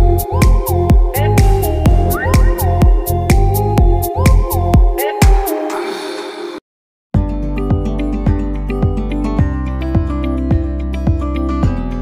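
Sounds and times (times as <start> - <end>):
electronic music with steady beat: 0.0 - 6.6
sliding synth notes: 1.2 - 4.7.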